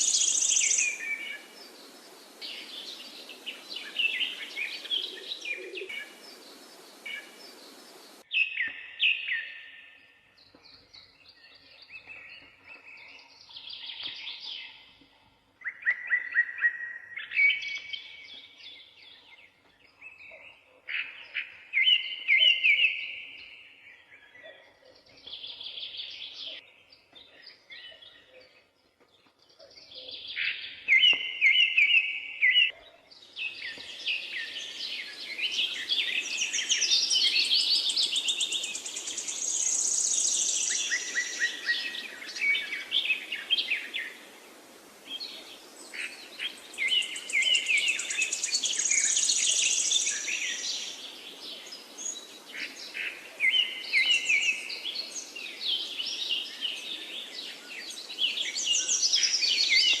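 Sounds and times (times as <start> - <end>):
faint background hiss: 0.0 - 8.3, 33.1 - 60.0
songbirds chirping and trilling: 0.0 - 60.0.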